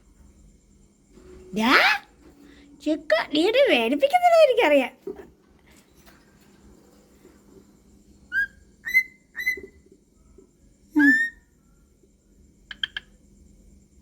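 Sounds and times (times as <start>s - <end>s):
cockatiel whistled chirps: 8.3s - 9.8s, 11.0s - 11.5s.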